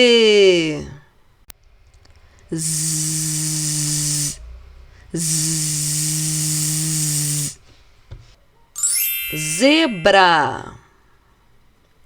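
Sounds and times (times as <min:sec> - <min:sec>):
woman making buzzing z sound: 0:02.5 - 0:04.5, 0:05.1 - 0:07.6.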